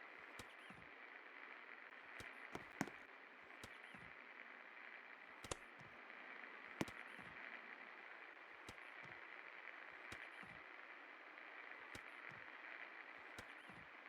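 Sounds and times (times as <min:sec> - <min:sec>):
ceiling fan whirring: 0:00.0 - 0:14.0
sharp fan clicks: 0:00.3 - 0:00.9, 0:02.1 - 0:04.1, 0:05.4 - 0:14.0.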